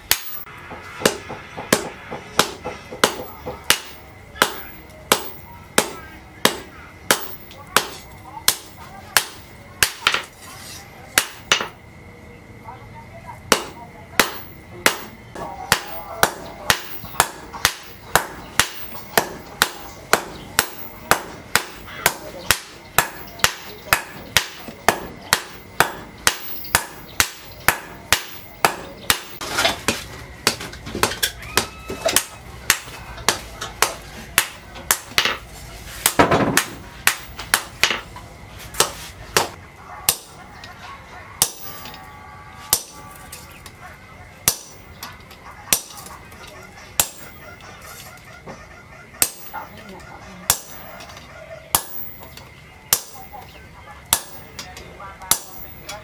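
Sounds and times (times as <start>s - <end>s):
hammer ringing on anvil: 0.0s - 10.3s, 13.5s - 29.4s, 42.7s - 43.3s
rooster crowing: 31.3s - 33.1s, 39.7s - 43.5s, 46.5s - 52.1s.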